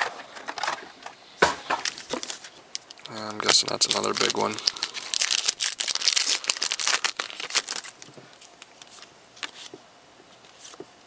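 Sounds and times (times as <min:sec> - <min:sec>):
wrapper tearing and crinkling: 0:01.8 - 0:09.1.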